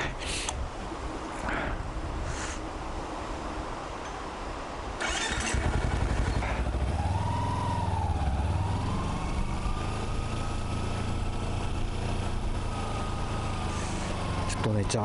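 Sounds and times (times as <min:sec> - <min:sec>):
motorcycle engine starting: 0:05.0 - 0:14.5.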